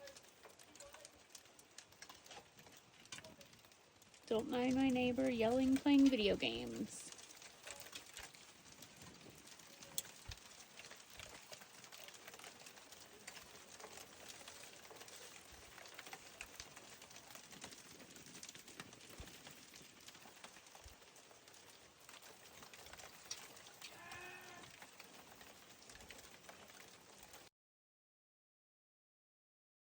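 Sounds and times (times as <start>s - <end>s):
snow ticking: 0.0s - 27.5s
distant yell: 23.9s - 24.8s.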